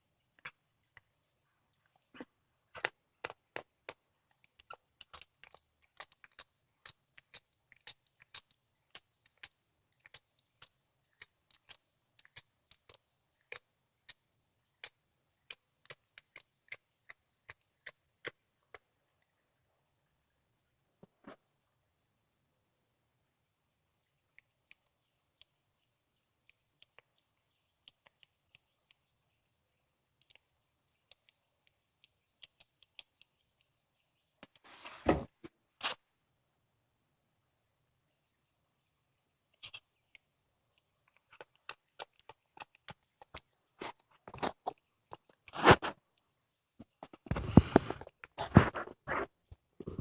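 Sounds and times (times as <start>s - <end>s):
cat teeth clicking on bone: 2.8s - 18.9s, 30.1s - 33.8s, 39.6s - 43.5s.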